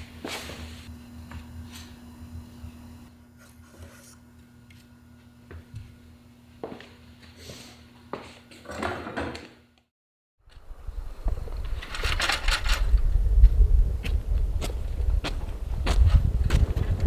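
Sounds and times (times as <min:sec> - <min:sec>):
steady low hum: 0:00.0 - 0:08.3, 0:10.5 - 0:17.0
scuffing footsteps: 0:06.6 - 0:07.0, 0:13.4 - 0:17.0
wind rumble on microphone: 0:10.5 - 0:17.0.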